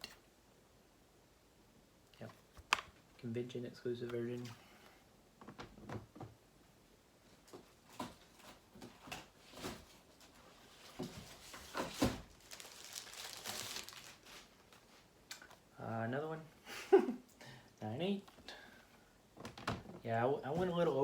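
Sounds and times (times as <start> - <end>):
packaging crinkling: 11.3 - 14.8.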